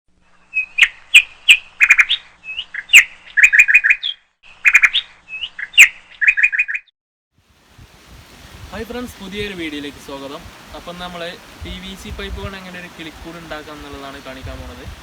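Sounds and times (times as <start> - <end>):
small birds chirping: 0.3 - 6.9.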